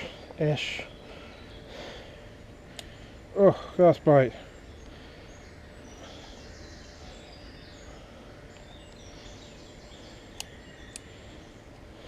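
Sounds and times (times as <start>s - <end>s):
low background rumble: 0.0s - 12.0s
small birds chirping: 0.0s - 12.0s
sharp clicks: 10.3s - 11.1s.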